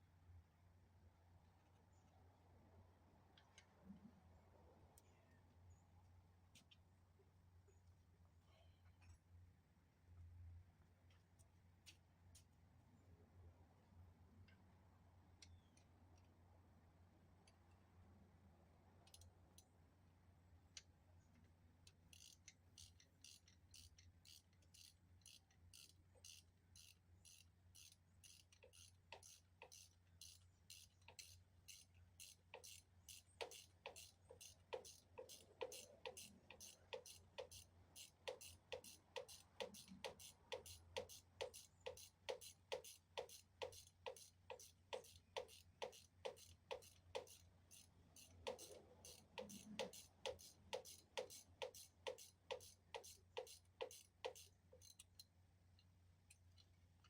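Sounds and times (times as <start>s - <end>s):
faint mechanical clicking: 3.3s - 4.2s, 6.5s - 7.0s, 15.3s - 16.4s, 18.9s - 19.8s, 20.6s - 57.0s.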